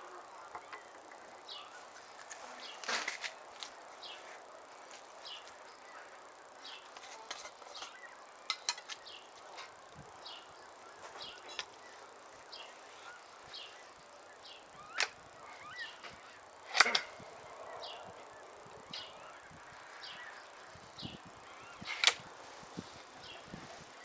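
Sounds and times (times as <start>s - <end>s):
faint high chirps: 5.2s - 22.1s
air rifle cracks: 16.7s - 17.2s, 21.8s - 22.3s.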